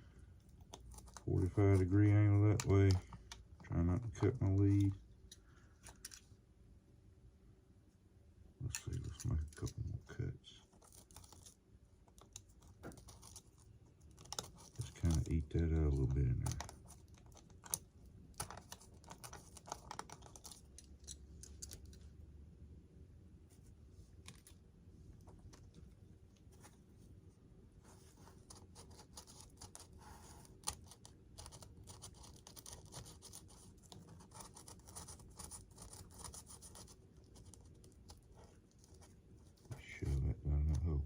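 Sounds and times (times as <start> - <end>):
knife scratching foam: 27.8 - 39.2.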